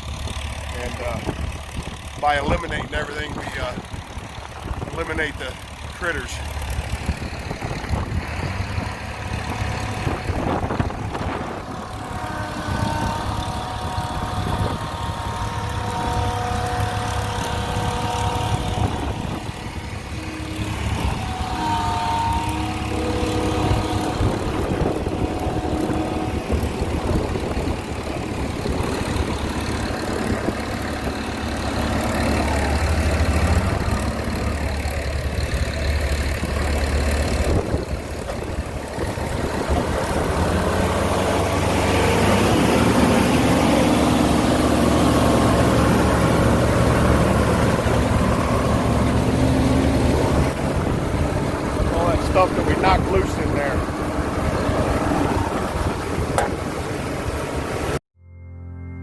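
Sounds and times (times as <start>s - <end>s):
air compressor engine humming: 0.0s - 57.9s.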